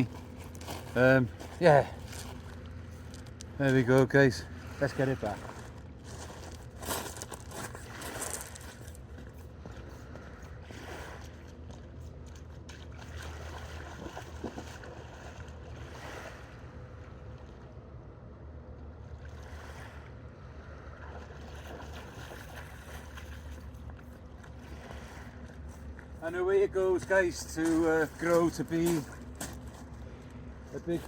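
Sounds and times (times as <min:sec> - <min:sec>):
sea waves washing: 0:19.3 - 0:29.3.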